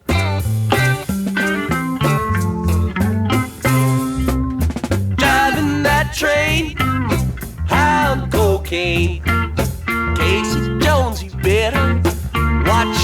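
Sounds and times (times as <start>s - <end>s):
rock song with guitar bass and drums: 0.0s - 13.0s
man singing: 2.2s - 3.0s, 5.2s - 9.4s, 10.2s - 13.0s.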